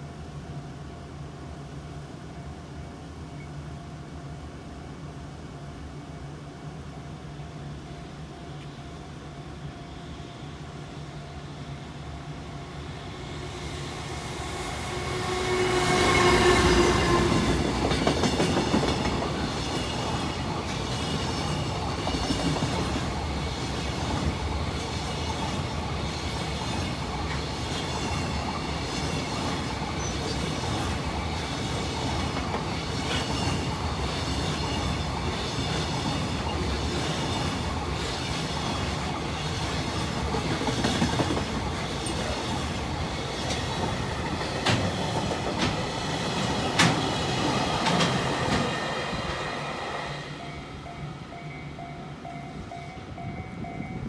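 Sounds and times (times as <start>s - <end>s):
electric locomotive motor whine: 7.8s - 40.7s, 41.4s - 54.0s
train wagons rumbling: 11.4s - 54.0s
wheels clacking over rail joints: 13.3s - 25.7s, 26.3s - 48.8s.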